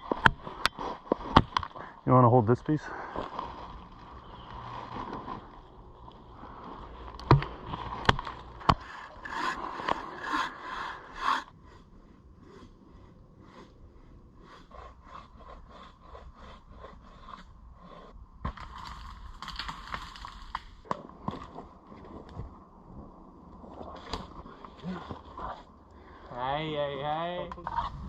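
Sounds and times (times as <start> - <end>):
wood scraping: 0.0 - 22.8, 26.8 - 28.0
rasping strokes on wood: 8.7 - 18.2.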